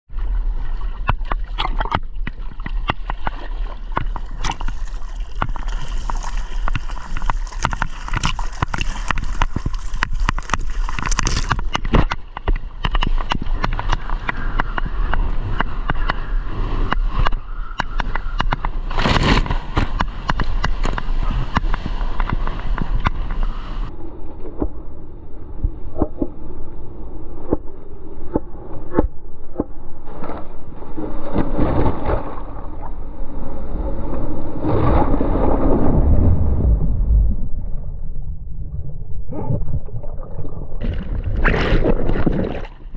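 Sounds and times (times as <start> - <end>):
splashes and knocks: 0.8 - 16.2, 17.2 - 23.5, 39.8 - 42.9
breaking wave rushing and sloshing: 31.0 - 42.9
wind buffeting on microphone: 34.6 - 42.9.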